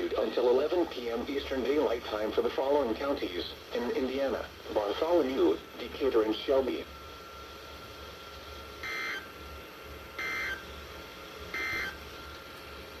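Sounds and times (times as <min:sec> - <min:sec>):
faint steady hum: 0:00.0 - 0:13.0
digital data bursts: 0:10.2 - 0:10.6.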